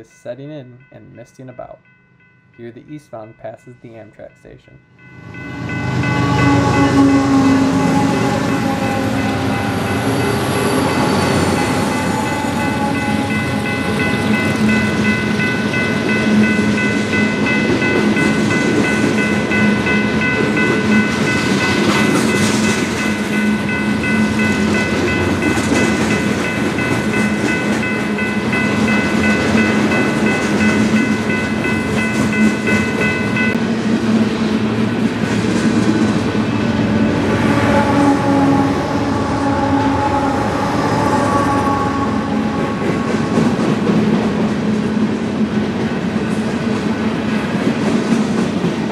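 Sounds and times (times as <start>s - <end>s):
freight train wheels rumbling on rail: 5.2s - 48.9s.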